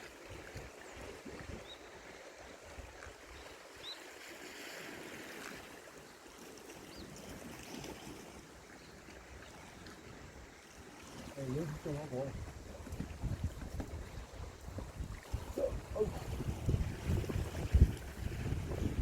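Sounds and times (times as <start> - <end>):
sea waves: 0.0 - 19.0
wind gusting on microphone: 11.6 - 19.0.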